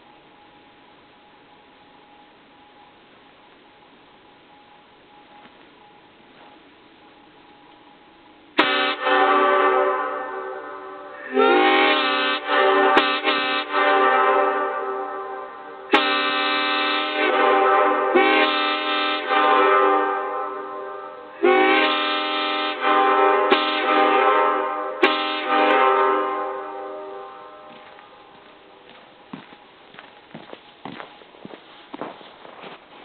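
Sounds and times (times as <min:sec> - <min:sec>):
air horn chord blasts: 0:08.6 - 0:28.8.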